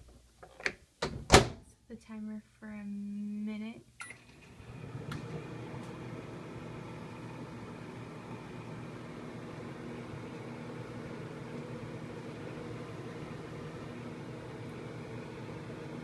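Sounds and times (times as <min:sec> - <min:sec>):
microwave humming: 0:04.0 - 0:16.0.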